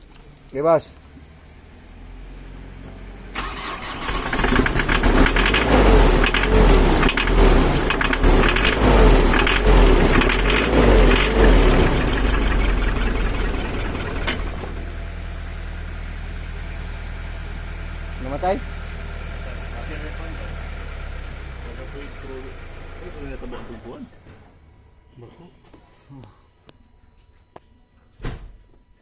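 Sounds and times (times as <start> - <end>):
diesel engine cranking and starting: 2.4 - 24.9.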